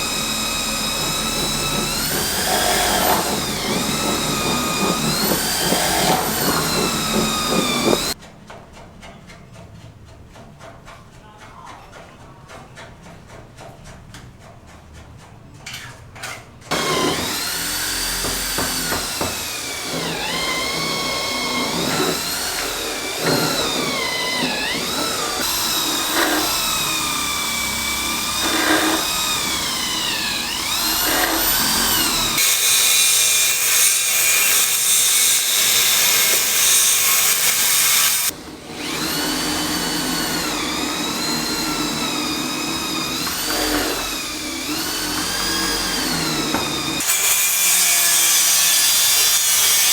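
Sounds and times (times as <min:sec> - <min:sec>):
electric power tool motor: 0:00.0 - 0:08.2, 0:16.7 - 0:49.9
harsh hissing grinding: 0:00.0 - 0:08.2, 0:16.7 - 0:38.3.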